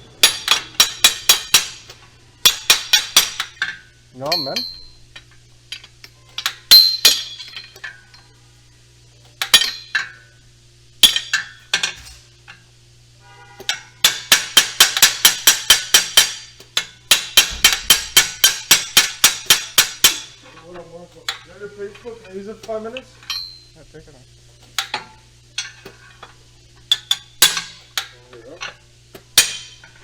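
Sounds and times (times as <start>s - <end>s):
metal tapping on metal: 0.2s - 8.0s, 13.6s - 23.7s, 24.6s - 30.0s.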